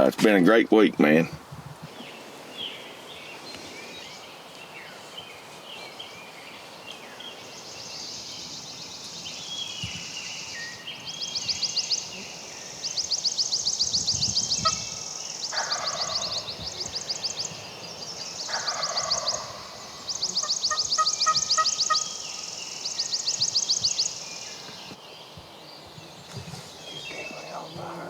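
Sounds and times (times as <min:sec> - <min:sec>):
songbird high trill: 0:07.1 - 0:25.0
turkey gobbling: 0:14.6 - 0:16.6, 0:18.5 - 0:22.5.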